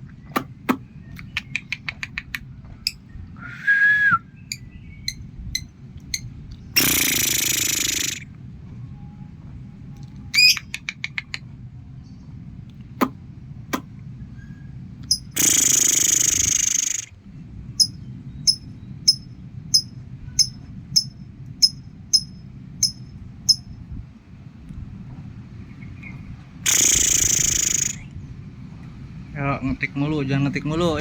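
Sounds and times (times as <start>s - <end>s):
sharp clicks: 0.4s - 2.4s
lovebird chirping: 1.1s - 3.0s, 4.4s - 8.2s, 10.3s - 11.4s, 14.4s - 23.7s, 25.7s - 28.4s
harsh noisy burst: 15.4s - 17.1s, 26.6s - 28.0s.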